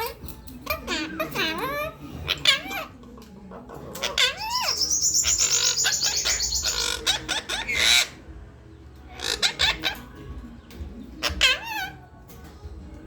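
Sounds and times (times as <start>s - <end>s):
parakeet chattering: 0.0s - 3.0s, 3.9s - 8.3s, 9.1s - 10.4s, 11.1s - 12.1s
parakeet harsh squawk: 0.0s - 3.0s, 3.9s - 8.3s, 9.1s - 10.2s, 11.2s - 12.1s.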